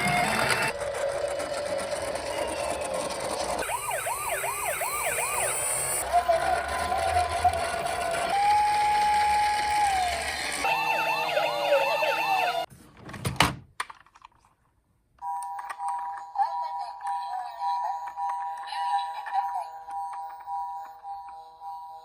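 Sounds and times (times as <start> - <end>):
toy sirens wailing: 0.0 - 12.7.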